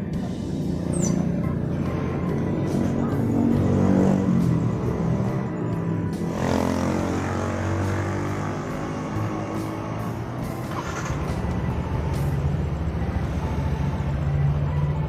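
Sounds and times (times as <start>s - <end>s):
scooter engine revving: 2.5s - 12.0s.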